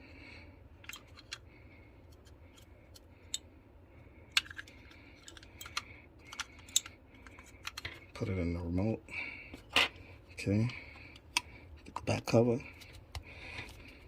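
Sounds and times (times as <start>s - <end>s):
clicks and taps handling plastic: 4.4s - 8.0s.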